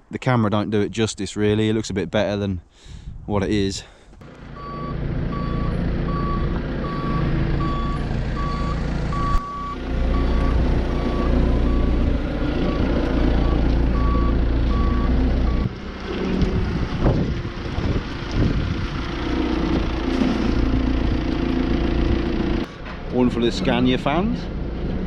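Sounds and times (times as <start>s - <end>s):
diesel engine rumble: 4.2s - 25.0s
reversing alarm beeping: 4.5s - 15.8s.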